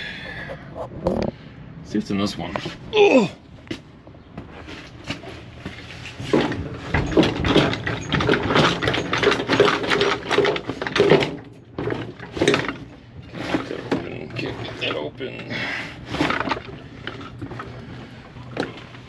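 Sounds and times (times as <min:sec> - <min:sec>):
metal tools clinking together: 0:07.0 - 0:12.6.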